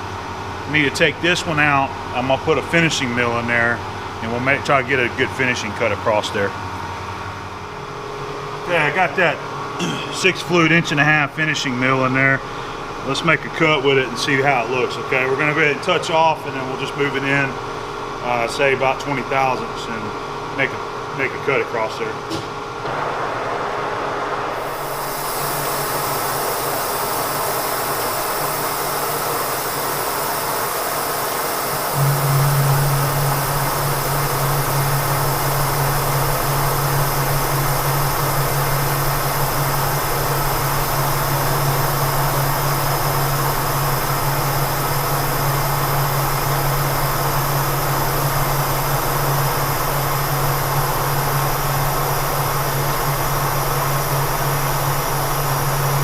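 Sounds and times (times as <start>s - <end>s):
milling machine running: 22.9s - 56.0s
low hum: 31.8s - 42.2s.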